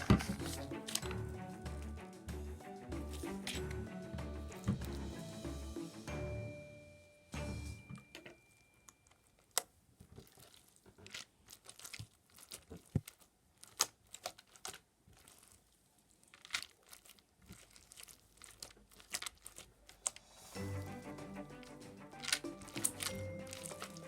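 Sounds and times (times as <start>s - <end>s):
slime crackling and popping: 9.3s - 20.4s, 22.2s - 24.0s.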